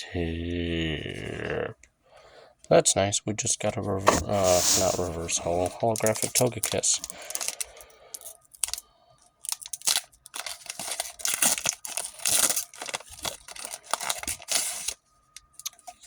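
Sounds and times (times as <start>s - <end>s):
foil wrapper tearing and crinkling: 4.3s - 8.8s, 9.4s - 15.0s.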